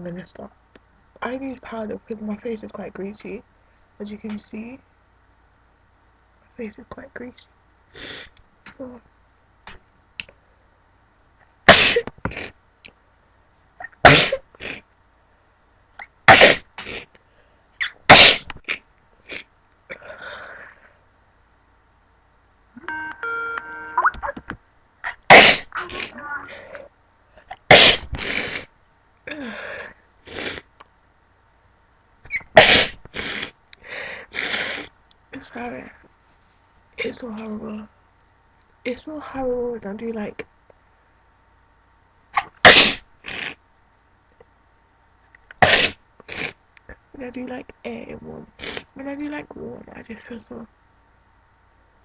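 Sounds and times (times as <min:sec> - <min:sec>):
woman sneezing: 0:11.7 - 0:12.1, 0:14.1 - 0:14.4, 0:18.1 - 0:18.5, 0:25.0 - 0:26.7, 0:27.7 - 0:28.4, 0:32.6 - 0:33.0, 0:42.4 - 0:43.0
breaths: 0:17.1 - 0:17.8, 0:19.9 - 0:21.1, 0:29.3 - 0:30.0, 0:33.1 - 0:34.9
electronic tone pattern: 0:22.8 - 0:24.5.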